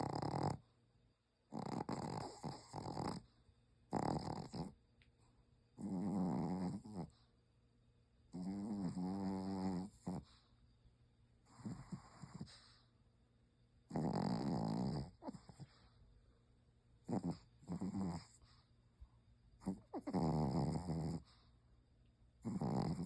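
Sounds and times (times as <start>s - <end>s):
dog snoring: 0.0s - 0.8s, 1.5s - 4.8s, 5.7s - 7.3s, 8.3s - 10.5s, 11.4s - 12.9s, 13.9s - 16.0s, 17.0s - 18.7s, 19.6s - 21.5s, 22.4s - 23.0s.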